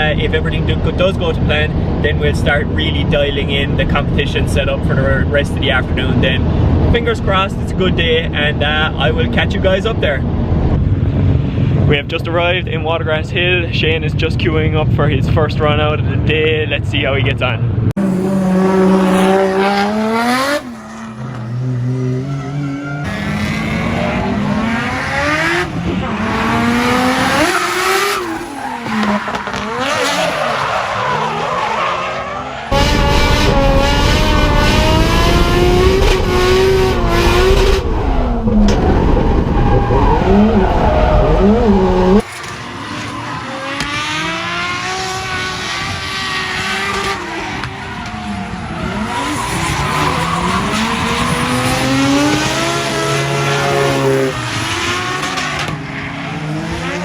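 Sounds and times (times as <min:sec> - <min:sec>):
car engine revving: 0:17.8 - 0:57.0
tyre squeal: 0:18.0 - 0:32.8, 0:39.5 - 0:45.2, 0:46.2 - 0:57.0.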